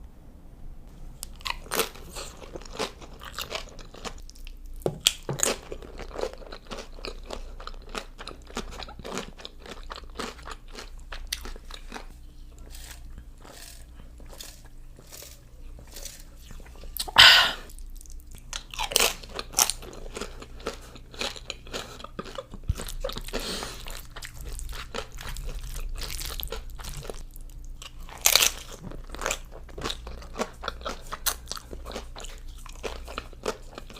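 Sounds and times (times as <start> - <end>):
person biting and chewing: 1.2 - 27.2.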